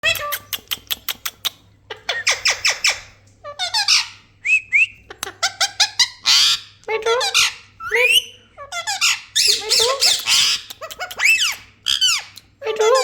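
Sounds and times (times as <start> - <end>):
parakeet squawking: 1.9 - 4.3, 5.0 - 13.0
parakeet rising whistles: 7.8 - 8.5.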